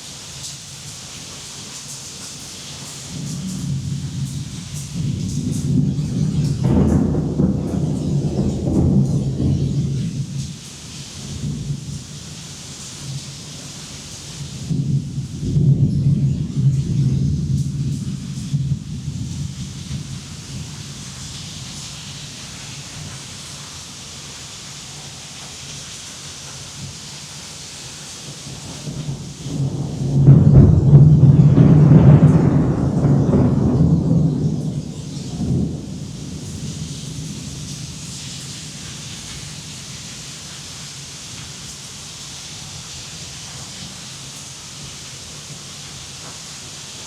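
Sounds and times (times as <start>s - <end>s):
rain falling: 0.0s - 47.0s
thunder rumble: 2.9s - 23.4s, 28.3s - 41.9s.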